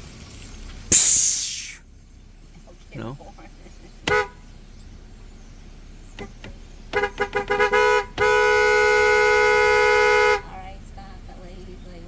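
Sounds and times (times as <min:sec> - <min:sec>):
two-note vehicle horn honking: 0:07.0 - 0:10.5.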